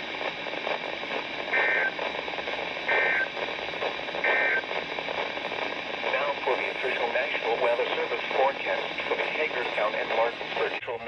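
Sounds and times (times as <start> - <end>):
radio static: 0.0 - 11.0
digital data tone bursts: 1.5 - 2.0.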